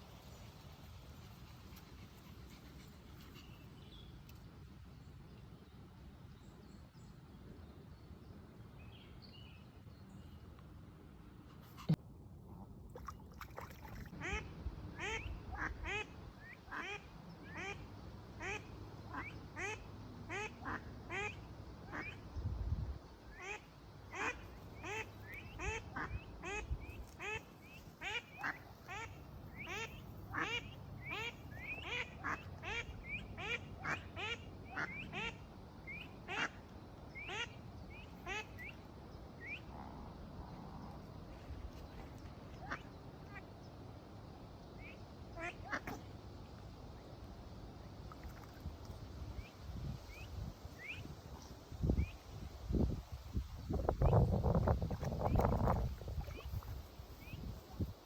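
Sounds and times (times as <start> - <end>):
ducks quacking: 28.0 - 36.6.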